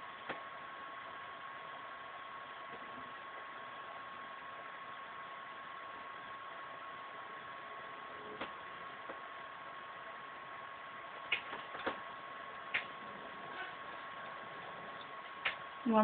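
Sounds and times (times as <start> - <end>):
recording hiss: 0.0 - 16.0.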